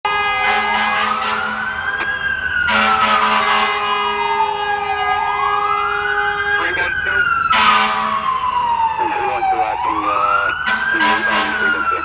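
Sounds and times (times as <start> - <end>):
air horn blast: 0.0 - 1.7, 2.7 - 6.6, 7.5 - 8.2, 10.6 - 12.0
fire engine siren wailing: 0.0 - 12.0.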